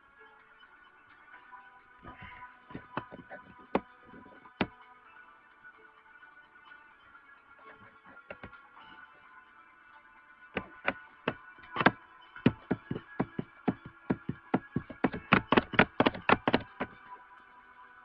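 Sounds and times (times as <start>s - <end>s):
faint background music: 0.0s - 18.0s
sharp knocks: 2.8s - 3.8s, 10.6s - 17.0s.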